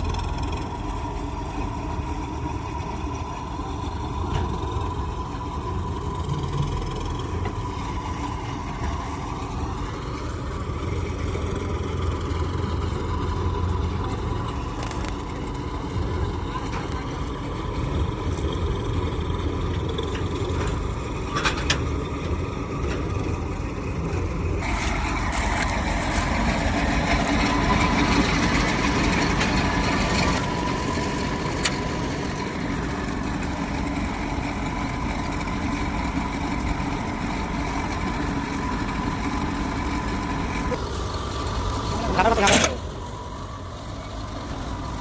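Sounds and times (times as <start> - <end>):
combine harvester engine whining: 0.0 - 45.0.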